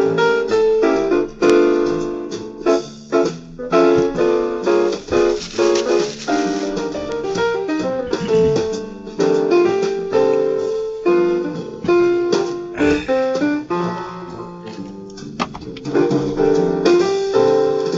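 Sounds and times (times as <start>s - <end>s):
jazz piano: 0.0s - 17.9s.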